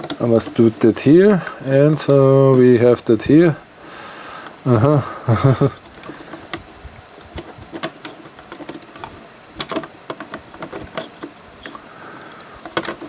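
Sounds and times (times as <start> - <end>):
small plastic parts clicking: 5.7 - 13.0.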